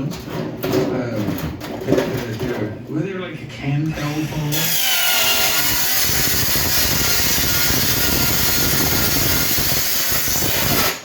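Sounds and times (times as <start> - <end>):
power tool working on metal: 4.0 - 11.0.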